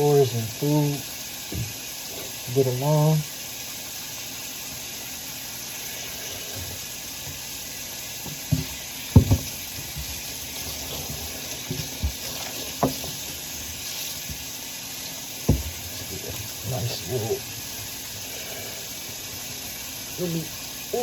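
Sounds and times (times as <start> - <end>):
tap water running into sink: 0.0 - 21.0
dishes and utensils knocking: 8.3 - 10.1.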